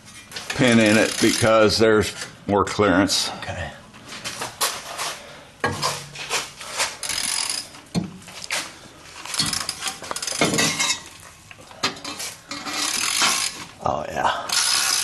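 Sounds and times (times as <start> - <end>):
metal exhaust parts clanking: 9.3 - 11.2.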